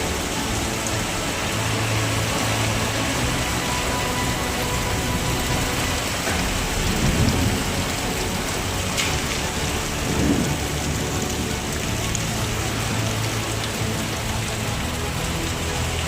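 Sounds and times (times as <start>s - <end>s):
heavy rain pouring: 0.0s - 16.0s
low thunder rumbling: 5.1s - 11.9s.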